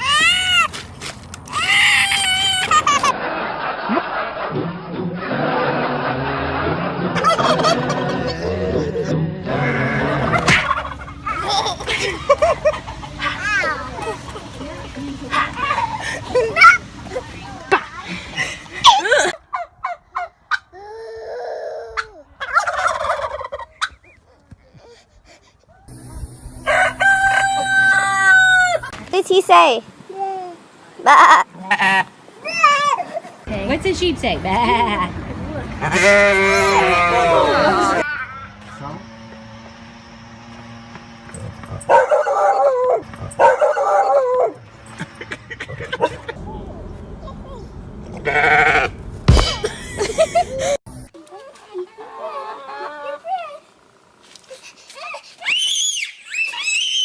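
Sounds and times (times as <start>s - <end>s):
dog howling: 26.6s - 28.9s, 41.9s - 44.6s
fowl calling: 26.7s - 28.9s.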